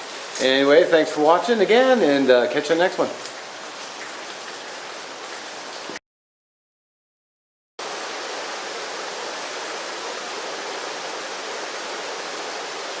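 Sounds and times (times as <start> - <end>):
steady even hiss: 0.0 - 6.0.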